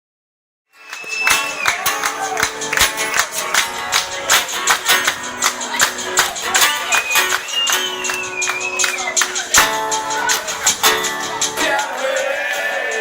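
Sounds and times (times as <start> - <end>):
guitar: 0.7 - 13.0
high sliding melody: 0.8 - 13.0
sharp percussion hits: 0.9 - 13.0.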